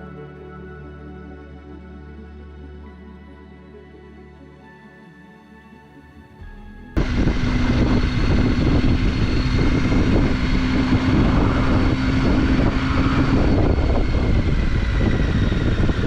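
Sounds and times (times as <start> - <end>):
motorcycle engine running: 7.0 - 16.0
wind noise on microphone: 7.0 - 16.0.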